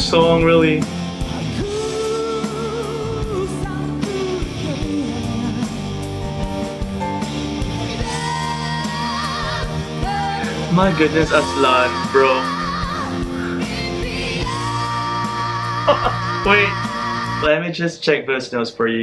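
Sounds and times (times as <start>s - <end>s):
guitar bass and drums band: 0.0s - 8.3s
man and woman singing duet: 1.4s - 6.2s, 8.0s - 17.5s.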